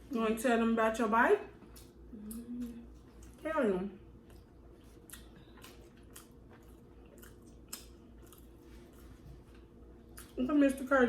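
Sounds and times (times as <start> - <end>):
low steady hum: 0.0 - 11.0
chewing and mouth clicks: 4.2 - 10.4.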